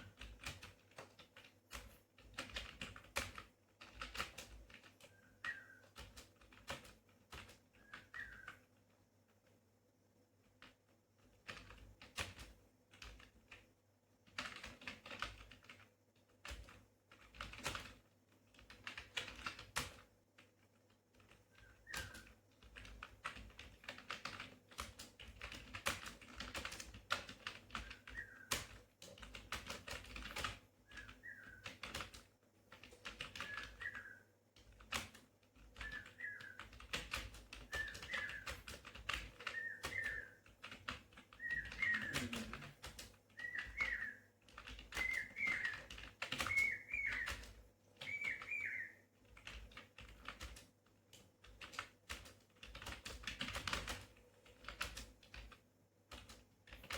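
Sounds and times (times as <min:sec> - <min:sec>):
keyboard typing clicks: 0:14.3 - 0:56.9.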